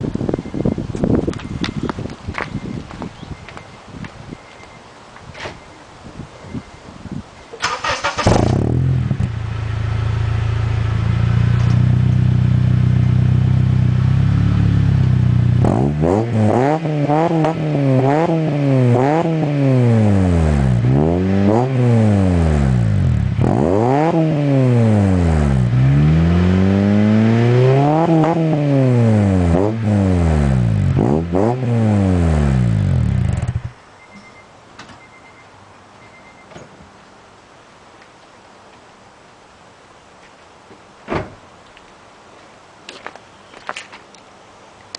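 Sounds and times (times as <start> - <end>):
car engine revving: 7.6 - 33.7.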